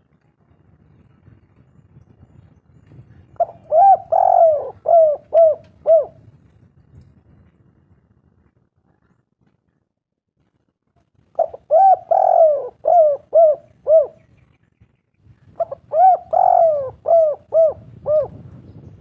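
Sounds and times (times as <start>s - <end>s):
dove cooing: 3.4s - 6.2s, 11.4s - 14.3s, 15.6s - 18.6s.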